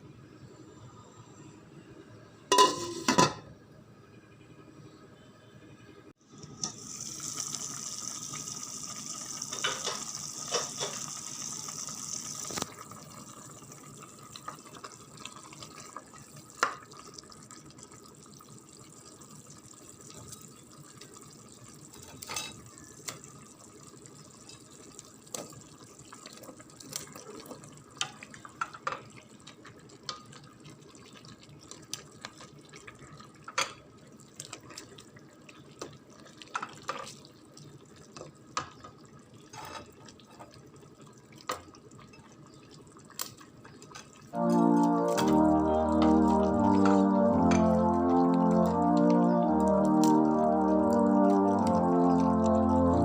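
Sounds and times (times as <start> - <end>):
kitchen tap running in sink: 6.4 - 44.4.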